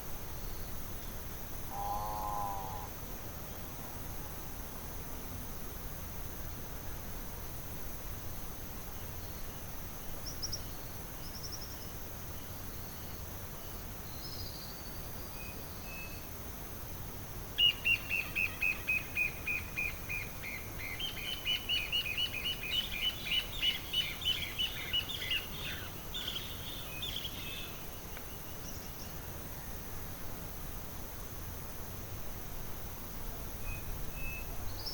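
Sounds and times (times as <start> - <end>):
high insect hiss: 0.0 - 34.9
forest birds calling: 17.6 - 29.3.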